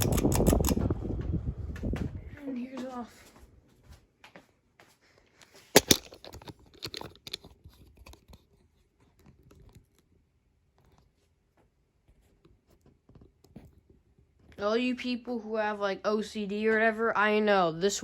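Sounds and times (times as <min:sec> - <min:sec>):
sharp clicks: 0:00.0 - 0:00.9.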